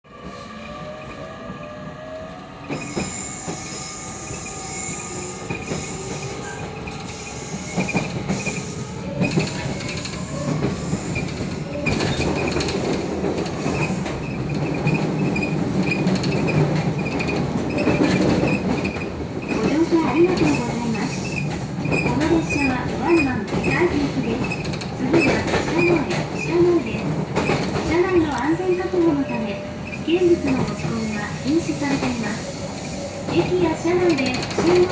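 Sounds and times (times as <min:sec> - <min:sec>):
train clattering: 0:02.7 - 0:34.9
high-pitched squeak: 0:30.2 - 0:33.2.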